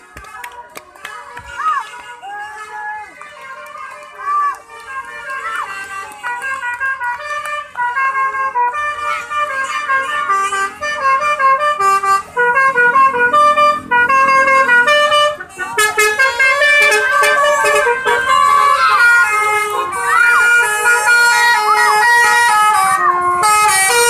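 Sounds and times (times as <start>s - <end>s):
musical bus air horns: 1.2s - 24.0s.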